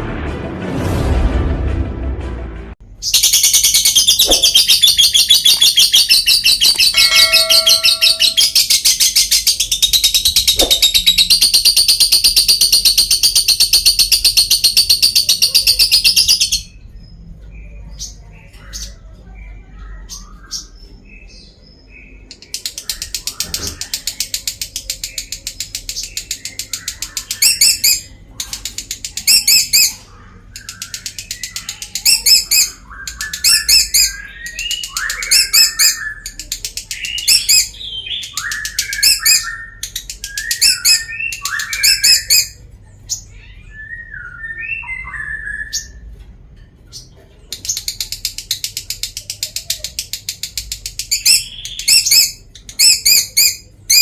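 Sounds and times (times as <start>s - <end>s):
shrill bird notes: 3.0s - 16.9s, 29.2s - 46.2s
lovebird ratchet-like chatter: 3.2s - 16.7s, 22.3s - 42.6s, 47.4s - 54.0s.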